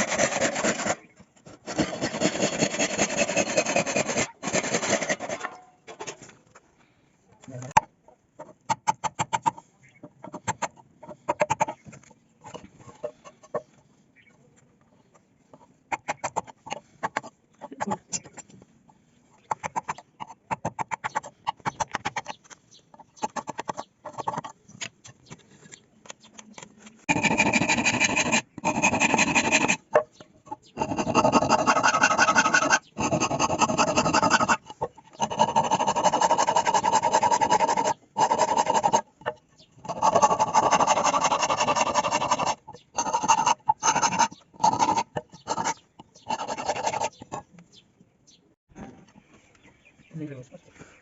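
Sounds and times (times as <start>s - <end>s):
hand tool rasping on wood: 0.0s - 5.5s, 27.1s - 47.4s.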